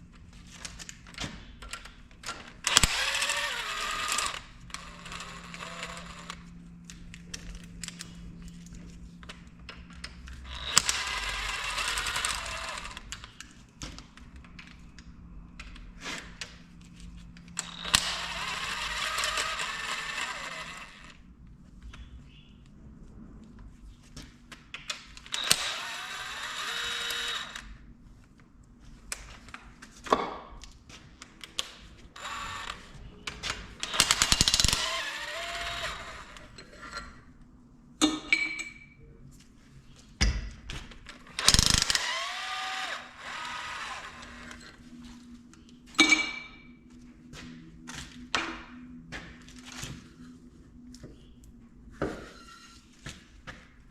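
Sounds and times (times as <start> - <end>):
ratchet clicking: 2.6 - 6.4, 10.5 - 13.2, 17.6 - 21.1, 25.3 - 27.6, 33.8 - 36.4, 41.4 - 44.7
metal parts clinking: 33.8 - 35.5.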